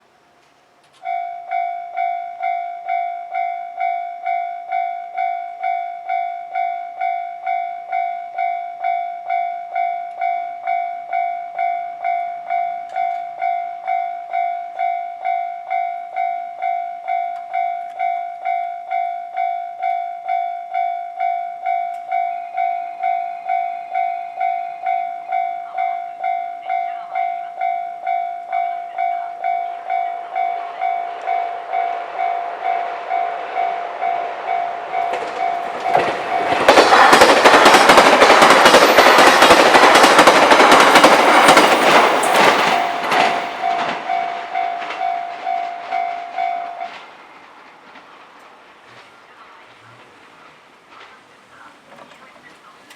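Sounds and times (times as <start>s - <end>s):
train noise: 0.0s - 52.9s
level crossing bell ringing: 1.0s - 47.0s
short high steady tone: 22.2s - 36.6s.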